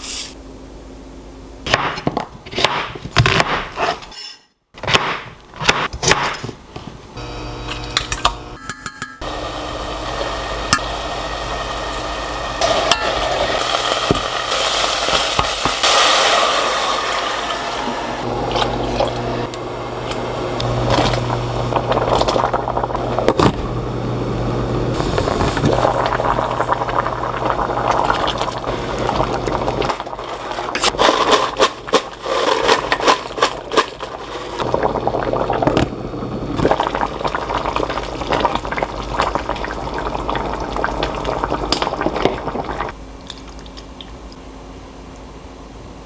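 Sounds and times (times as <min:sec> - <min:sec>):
water running: 0:09.2 - 0:30.9, 0:33.9 - 0:44.2.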